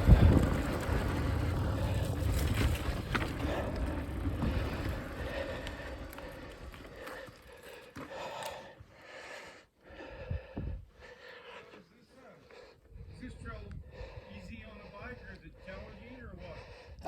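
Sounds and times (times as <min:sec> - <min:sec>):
bike rattles and knocks: 0:00.0 - 0:08.4
bike tyres rumbling on dirt: 0:00.0 - 0:08.4.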